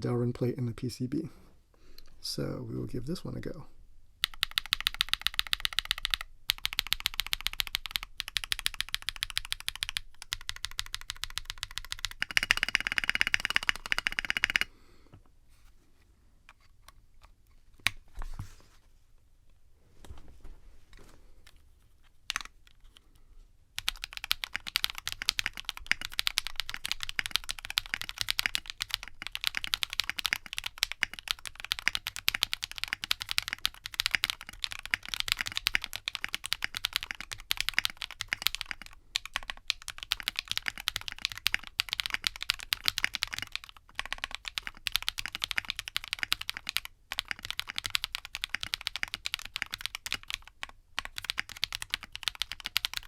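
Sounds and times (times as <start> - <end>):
mechanical keyboard typing: 4.2 - 14.7, 22.3 - 22.5, 23.8 - 53.0.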